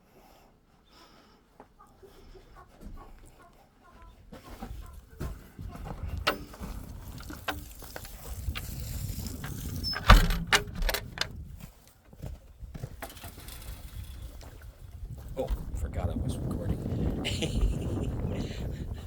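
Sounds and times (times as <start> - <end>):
clicks and knocks: 9.4 - 11.3.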